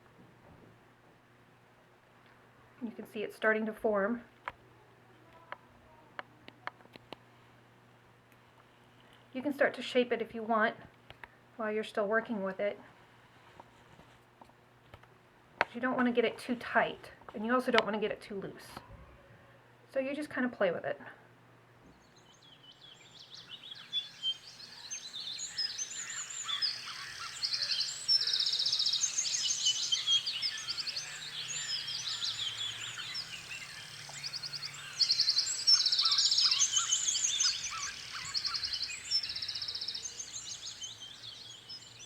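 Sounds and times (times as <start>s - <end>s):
faint low hum: 0.0s - 42.0s
small birds chirping and trilling: 21.8s - 42.0s.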